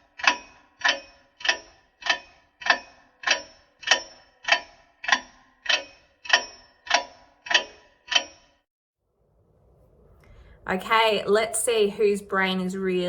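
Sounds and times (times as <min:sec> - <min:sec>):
ticking clock: 0:00.0 - 0:08.6.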